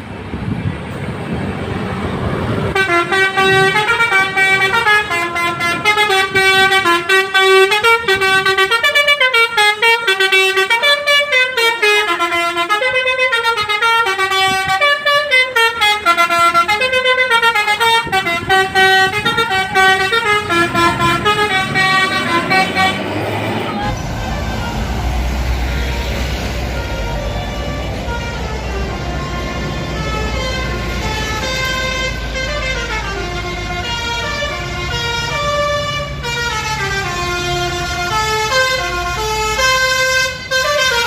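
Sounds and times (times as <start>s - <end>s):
musical bus horn melody: 2.7s - 41.0s.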